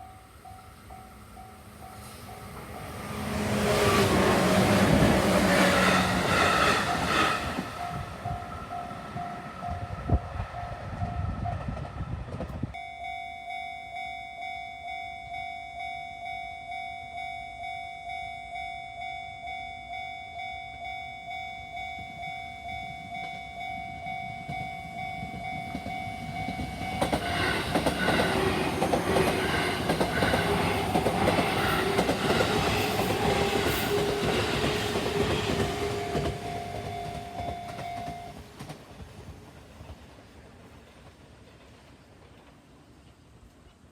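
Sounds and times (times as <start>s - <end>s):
level crossing warning bell: 0.0s - 11.5s, 12.7s - 38.4s
train rumbling past: 0.0s - 12.8s, 21.2s - 43.9s
train wheels clattering: 24.3s - 40.1s.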